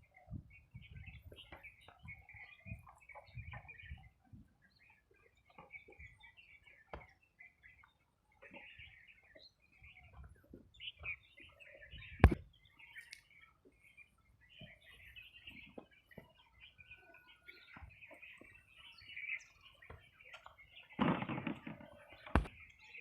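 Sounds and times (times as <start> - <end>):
small birds chirping: 0.0 - 23.0
faint clicks: 12.2 - 13.4.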